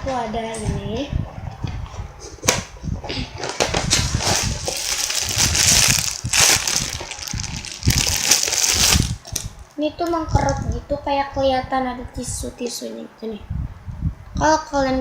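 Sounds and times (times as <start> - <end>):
plastic packaging crinkling: 3.6 - 9.5.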